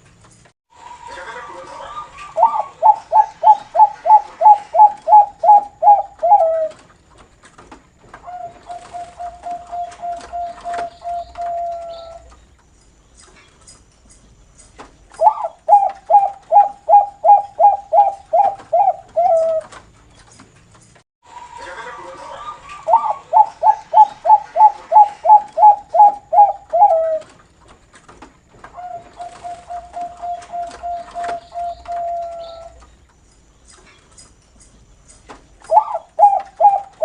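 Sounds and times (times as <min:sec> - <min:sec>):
dove cooing: 0:01.0 - 0:06.9, 0:08.2 - 0:12.3, 0:15.2 - 0:19.8, 0:22.3 - 0:27.4, 0:28.7 - 0:32.8, 0:35.6 - 0:37.0.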